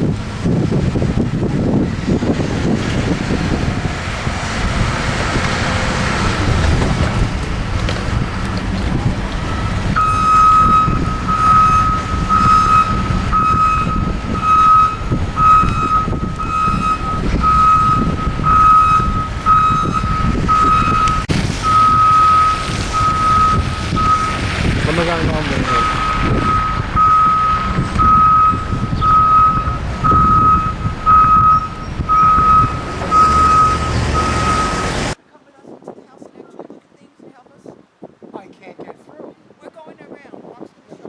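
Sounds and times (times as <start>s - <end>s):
low engine rumble: 0.0s - 35.2s
truck reversing alarm beeping: 8.2s - 35.2s.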